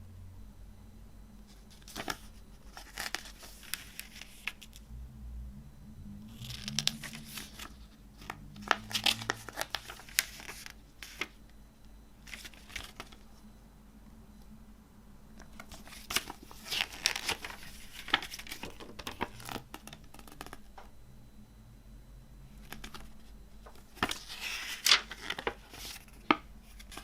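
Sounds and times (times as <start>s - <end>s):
paper and plastic rustling: 1.5s - 4.8s, 6.3s - 11.4s, 12.2s - 13.4s, 15.4s - 20.7s, 22.6s - 27.0s.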